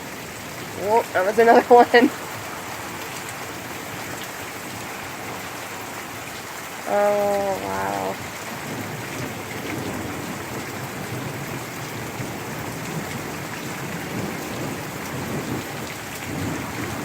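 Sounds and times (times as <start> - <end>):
heavy rain pouring: 0.0 - 17.0
thunder rumbling: 7.1 - 17.0.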